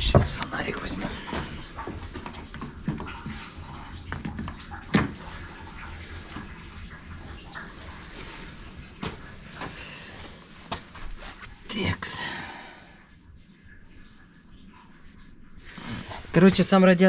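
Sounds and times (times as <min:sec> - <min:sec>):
liquid splashing into a bucket: 0:00.0 - 0:11.4.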